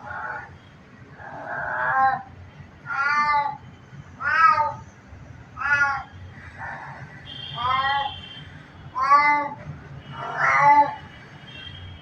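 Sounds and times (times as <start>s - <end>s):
cat meowing: 1.2s - 2.3s, 2.9s - 3.6s, 4.2s - 4.8s, 5.6s - 8.2s, 8.9s - 9.6s, 10.2s - 11.1s.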